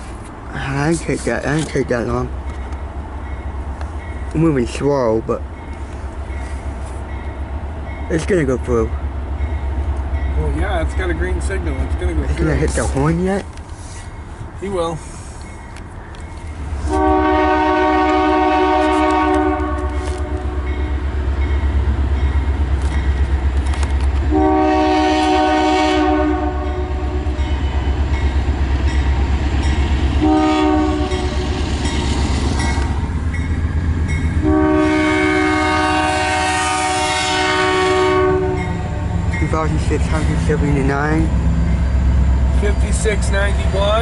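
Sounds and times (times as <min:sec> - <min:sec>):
train rumbling past: 0:00.0 - 0:44.0
locomotive air horn: 0:16.8 - 0:20.6, 0:24.3 - 0:27.3, 0:30.2 - 0:31.6, 0:34.4 - 0:38.7.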